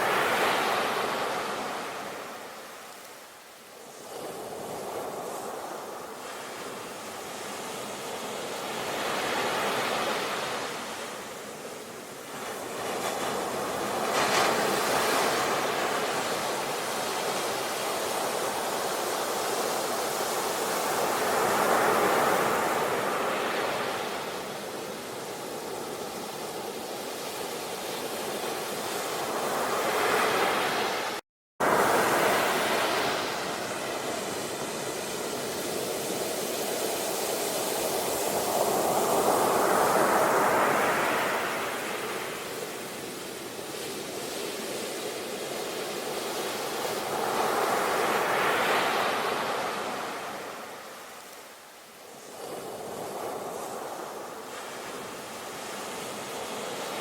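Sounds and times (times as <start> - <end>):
sea waves breaking ashore: 0.0 - 57.0.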